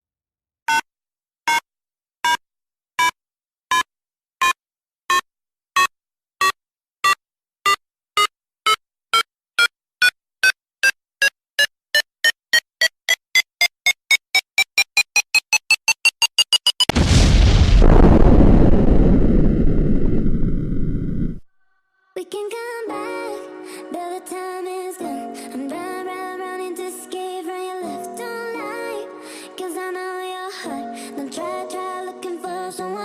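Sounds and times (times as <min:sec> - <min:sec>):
countdown timer beeps: 0:11.6 - 0:16.9.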